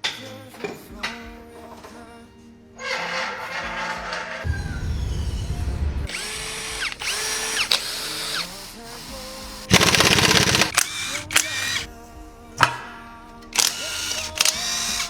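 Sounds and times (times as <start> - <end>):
loud rattling of power tool: 6.1 - 11.9, 13.6 - 15.0
power tool spinning: 6.1 - 11.9, 13.6 - 15.0.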